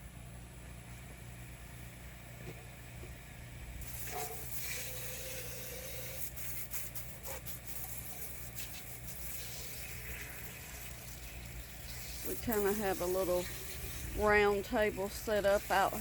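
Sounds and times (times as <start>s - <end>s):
steady low hum: 0.0s - 16.0s
water hissing and splashing: 3.8s - 16.0s.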